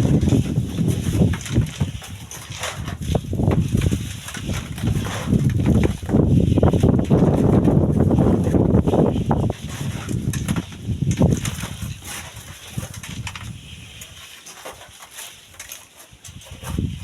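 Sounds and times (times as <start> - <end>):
wind buffeting microphone: 0.0 - 14.1, 16.2 - 17.0.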